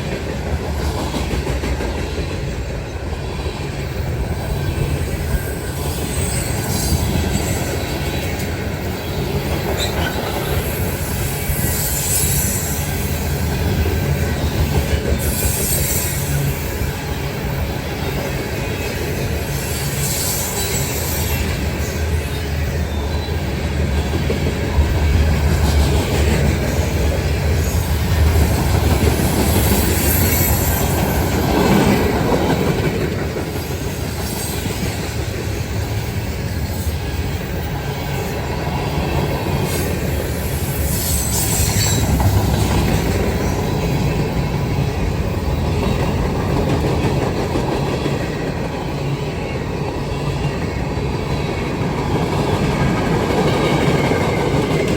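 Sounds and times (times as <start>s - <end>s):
freight train rumbling past: 0.0s - 54.9s
wheel squeal: 5.1s - 8.4s, 9.7s - 13.0s, 15.2s - 16.6s, 29.5s - 31.6s.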